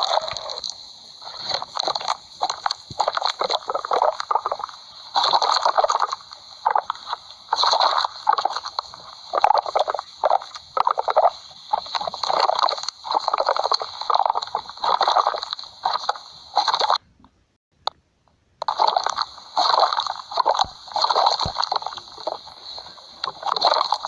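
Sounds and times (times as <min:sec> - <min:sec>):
cartoon stomach growling: 0:00.0 - 0:17.0, 0:18.6 - 0:24.0.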